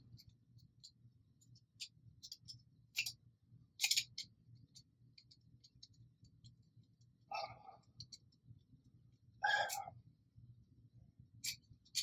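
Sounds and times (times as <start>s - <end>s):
small parts clicking and tapping: 0.0s - 7.2s, 7.8s - 8.6s, 11.4s - 12.0s.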